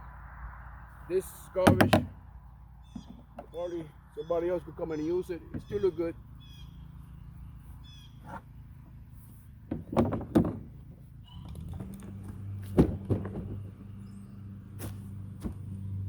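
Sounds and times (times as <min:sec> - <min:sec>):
knocks and clunks: 0:01.6 - 0:02.2, 0:02.9 - 0:03.6, 0:05.4 - 0:06.0, 0:09.6 - 0:14.1, 0:14.8 - 0:15.9.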